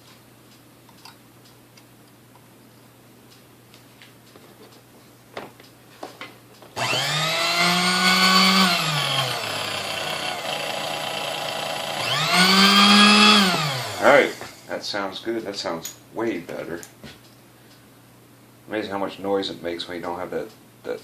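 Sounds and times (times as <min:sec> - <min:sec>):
stand mixer motor whining: 0:06.8 - 0:14.7.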